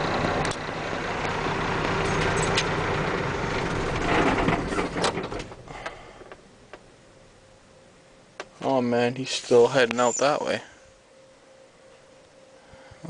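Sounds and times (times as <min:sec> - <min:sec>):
truck engine idling: 0:00.0 - 0:07.7.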